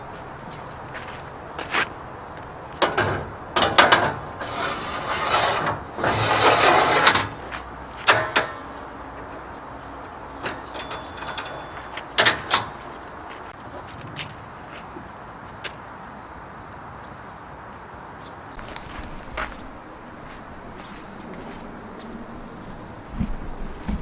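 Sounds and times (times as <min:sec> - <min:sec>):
rasping scrapes: 0:04.3 - 0:07.3.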